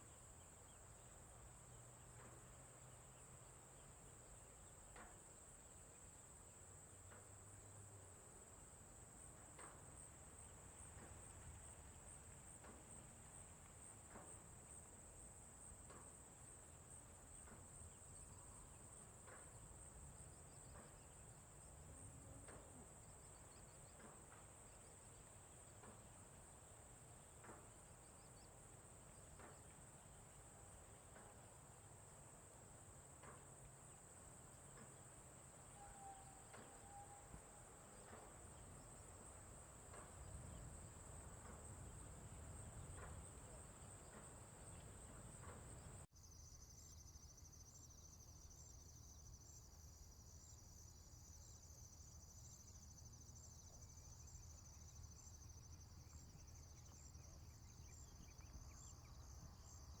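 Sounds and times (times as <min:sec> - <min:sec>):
pulsing insect chorus: 0:33.8 - 1:00.0
high-pitched insect chorus: 0:35.6 - 1:00.0.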